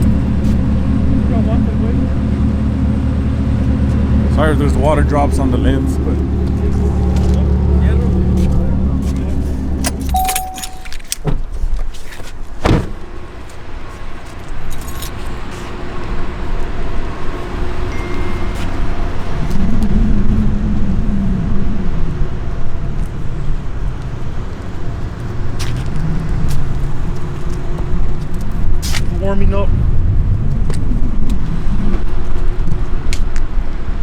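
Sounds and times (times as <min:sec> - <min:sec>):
vehicle engine idling: 0:00.0 - 0:10.9, 0:13.0 - 0:30.6
keys jangling: 0:09.8 - 0:11.2.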